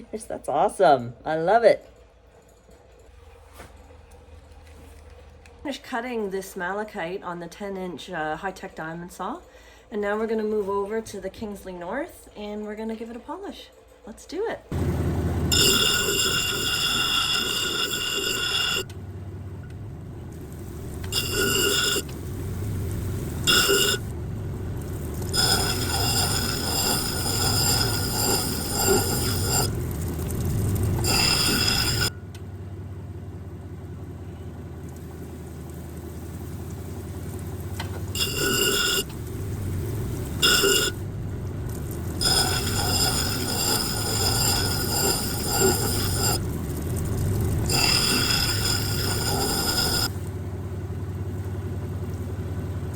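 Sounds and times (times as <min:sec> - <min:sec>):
motor hum: 0:14.6 - 0:52.9
high grinding whine: 0:14.7 - 0:32.5, 0:34.3 - 0:50.4.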